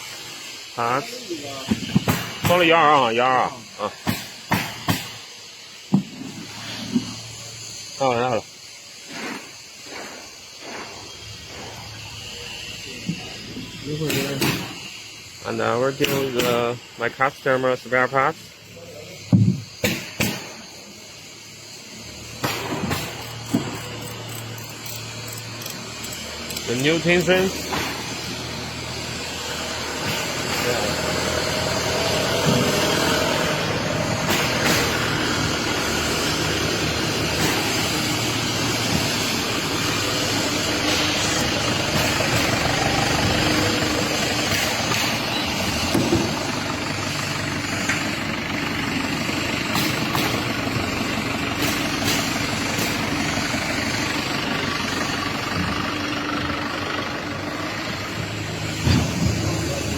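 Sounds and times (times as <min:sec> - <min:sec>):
vehicle engine running: 0:00.0 - 0:59.9
knocks and clanks: 0:01.7 - 0:02.6, 0:19.3 - 0:20.6, 0:58.7 - 0:59.6.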